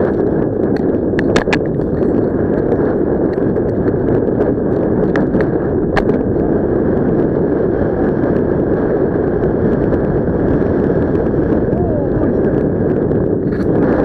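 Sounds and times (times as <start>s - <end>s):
wind rushing over microphone: 0.0s - 14.0s.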